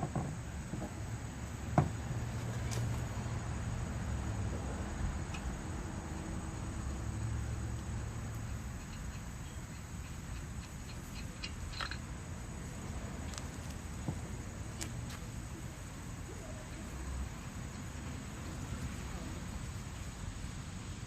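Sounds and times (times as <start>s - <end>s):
lug nuts clinking: 8.4s - 12.3s.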